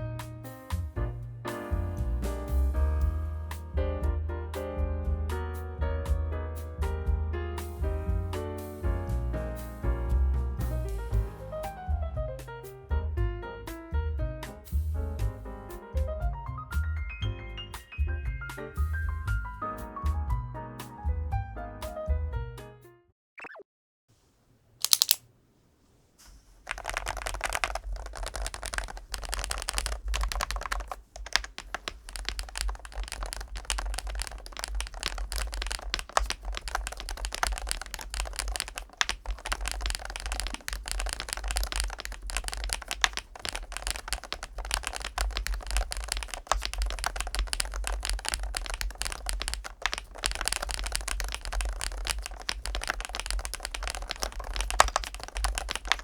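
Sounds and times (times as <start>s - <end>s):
keyboard typing clicks: 24.8s - 25.2s, 26.6s - 56.0s.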